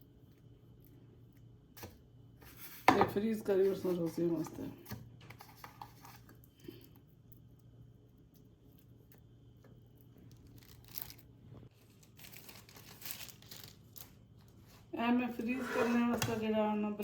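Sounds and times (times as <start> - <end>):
paper rustling and crinkling: 10.3 - 14.9.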